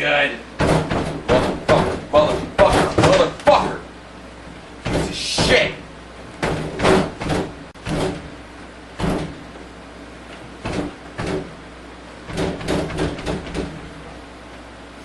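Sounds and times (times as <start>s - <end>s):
steady low hum: 0.0s - 15.0s
knocks on a television set: 0.6s - 3.3s, 4.8s - 5.6s, 6.4s - 8.3s, 9.0s - 9.4s, 10.6s - 11.5s, 12.3s - 13.8s.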